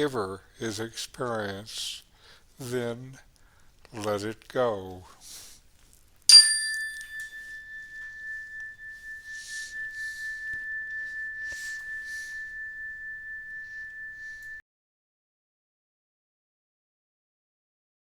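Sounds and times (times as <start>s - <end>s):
meditation bell ringing: 6.3s - 14.6s.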